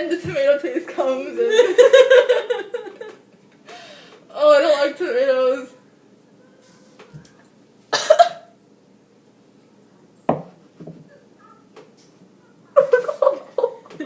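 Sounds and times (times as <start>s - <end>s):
person coughing: 7.9s - 8.6s.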